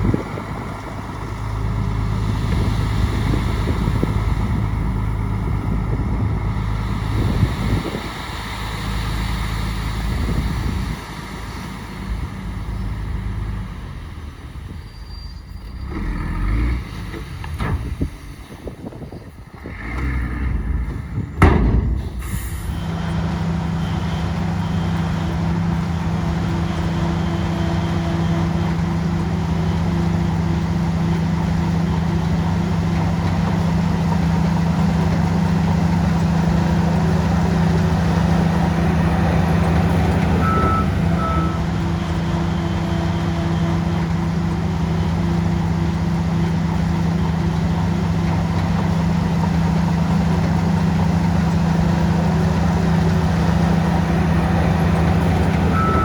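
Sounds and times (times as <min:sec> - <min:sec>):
heavy diesel engine running: 0:00.0 - 0:56.0
sharp knock: 0:21.4 - 0:22.4
short high beeps: 0:40.4 - 0:41.6, 0:55.7 - 0:56.0.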